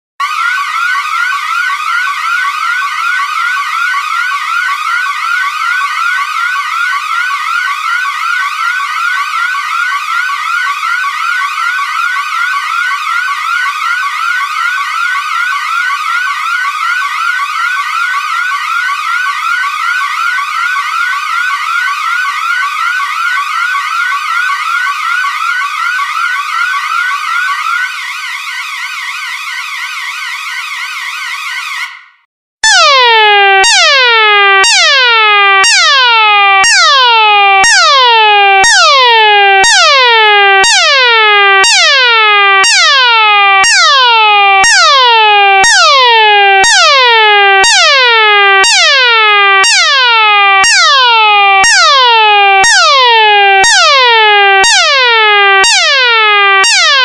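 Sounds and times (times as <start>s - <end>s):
alarm rising sweep tone: 32.6s - 57.0s
steady alarm tone: 32.6s - 57.0s.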